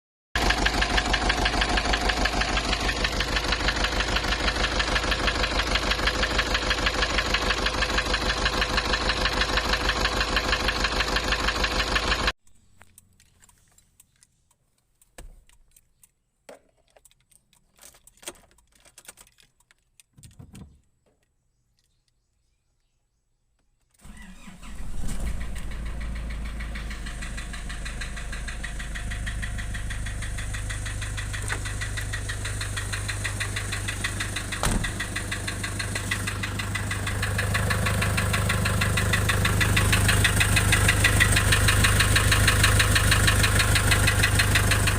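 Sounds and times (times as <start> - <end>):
diesel engine idling: 0.4 - 12.3, 24.1 - 44.9.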